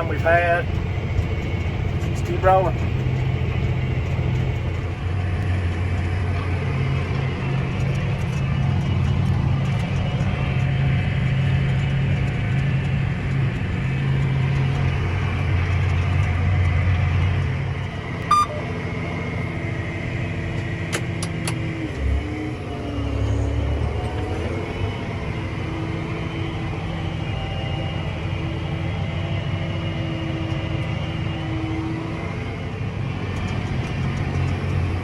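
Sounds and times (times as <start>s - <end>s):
tractor engine rumbling: 0.0s - 35.0s
short beep: 18.3s - 18.7s.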